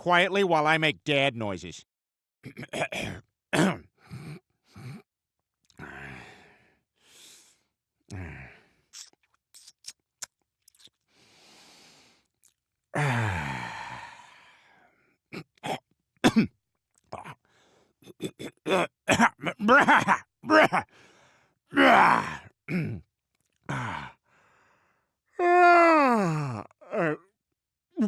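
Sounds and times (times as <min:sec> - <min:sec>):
breathy sigh: 0:05.8 - 0:08.8, 0:13.0 - 0:14.9, 0:23.7 - 0:25.0
man grunting and groaning: 0:08.1 - 0:08.6, 0:13.0 - 0:14.3, 0:17.2 - 0:17.4, 0:18.2 - 0:20.9, 0:21.7 - 0:23.0, 0:23.7 - 0:24.2, 0:25.4 - 0:27.2
mouth clicks: 0:08.9 - 0:11.0.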